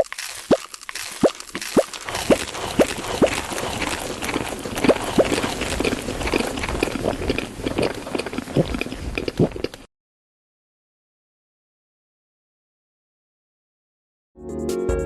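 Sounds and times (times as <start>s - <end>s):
small wet clicks: 0.0s - 9.9s
wet chewing and mouth smacks: 0.0s - 9.9s.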